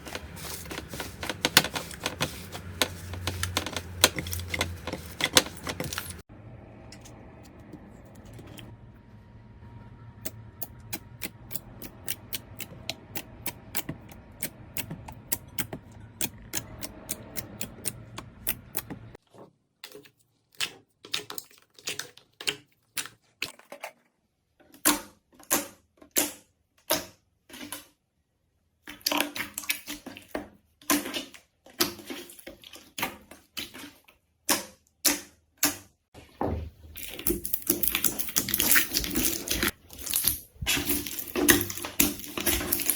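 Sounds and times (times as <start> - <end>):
low hum: 5.6 - 13.4
slime popping and crackling: 37.0 - 42.9.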